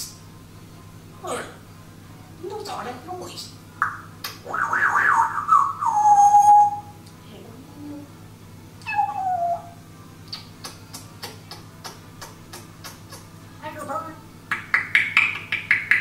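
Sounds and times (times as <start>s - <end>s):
parrot squeaky calls: 8.8s - 9.8s.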